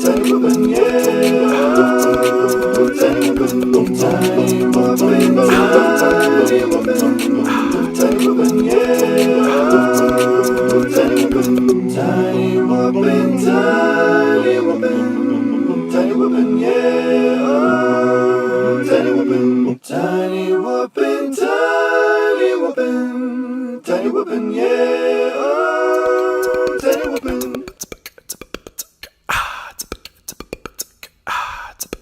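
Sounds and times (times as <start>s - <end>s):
a cappella voices singing: 0.0s - 27.8s
sustained low hum: 1.5s - 8.8s, 9.4s - 16.2s.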